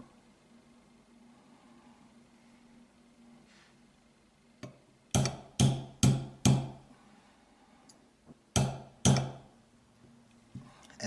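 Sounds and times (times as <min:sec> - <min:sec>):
hammer striking metal punch: 0:05.2 - 0:06.8, 0:08.6 - 0:09.5.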